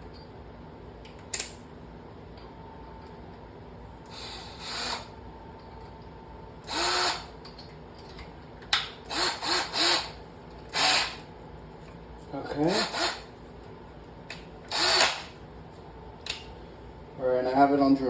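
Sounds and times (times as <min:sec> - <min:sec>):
hammer drill motor whining: 0:04.1 - 0:05.1, 0:06.6 - 0:07.3, 0:09.1 - 0:11.3, 0:12.6 - 0:13.3, 0:14.7 - 0:15.3.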